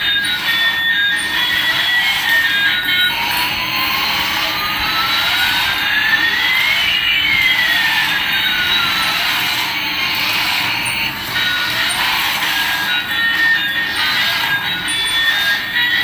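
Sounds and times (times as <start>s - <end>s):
toy jet engine hiss and whine: 0.0s - 16.0s.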